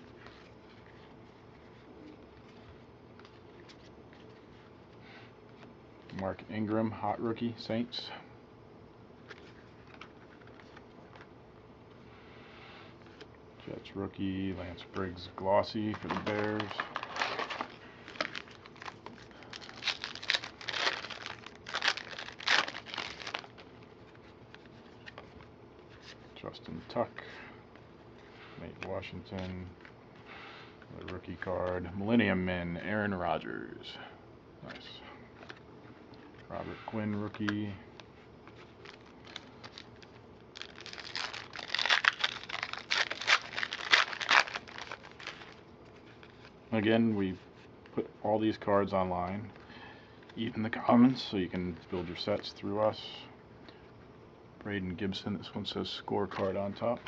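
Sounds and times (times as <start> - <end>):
cards being handled: 0.0 - 6.8, 9.1 - 11.4, 13.0 - 31.9, 34.6 - 50.5, 56.2 - 57.0
foil wrapper crinkling: 15.6 - 25.4, 37.2 - 46.6.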